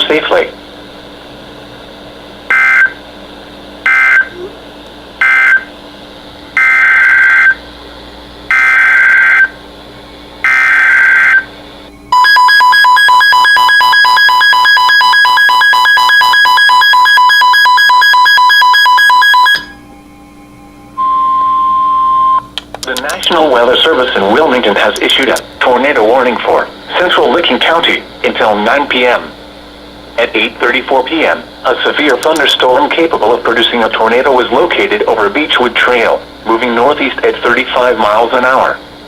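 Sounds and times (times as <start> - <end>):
steady warning alarm tone: 2.5 - 3.0, 3.8 - 4.4, 5.2 - 5.8, 6.6 - 7.7, 8.5 - 9.6, 10.4 - 22.5
rapidly pulsing electronic alert tone: 3.8 - 4.4, 5.2 - 5.7, 6.6 - 7.6, 8.5 - 9.6, 10.4 - 11.5, 12.2 - 19.8.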